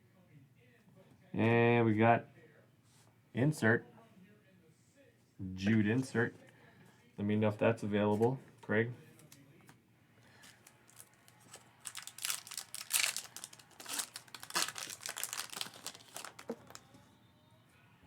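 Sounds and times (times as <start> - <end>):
foil wrapper crinkling and tearing: 10.4 - 16.8.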